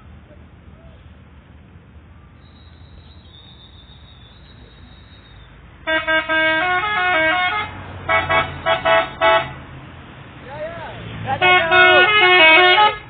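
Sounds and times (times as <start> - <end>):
multi-tone bus horn melody: 5.8 - 9.6, 11.4 - 13.0.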